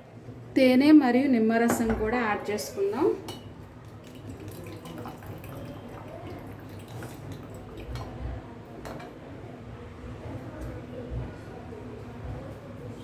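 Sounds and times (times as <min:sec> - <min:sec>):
faint liquid dripping: 0:03.3 - 0:09.2.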